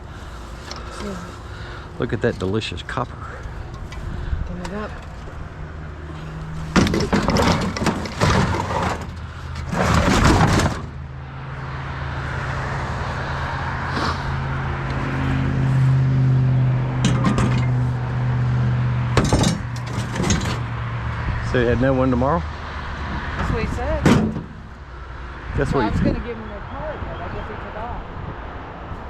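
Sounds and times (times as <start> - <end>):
truck engine humming: 0.0 - 25.3
metal scrap clattering and scraping: 0.1 - 11.1, 16.9 - 20.8, 23.0 - 24.8.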